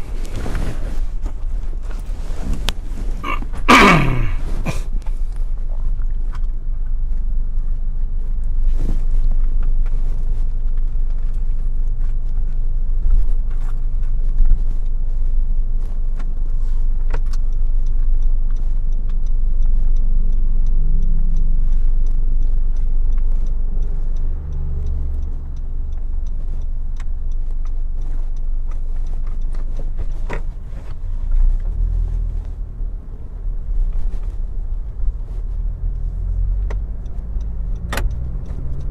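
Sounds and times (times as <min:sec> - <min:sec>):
car road and engine rumble: 0:00.0 - 0:38.9.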